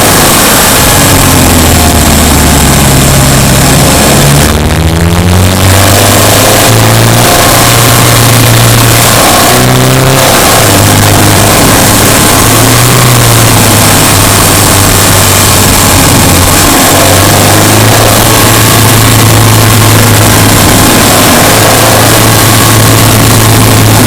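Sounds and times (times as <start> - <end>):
car engine pulling: 0.0 - 24.0
road and wind noise: 0.0 - 24.0.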